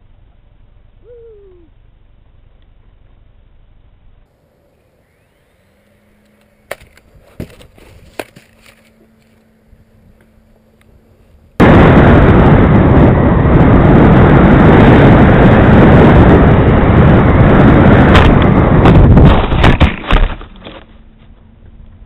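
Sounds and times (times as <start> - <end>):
overloaded wind rushing noise: 5.8 - 20.2
plane crashing knocks and cracks: 18.0 - 20.9.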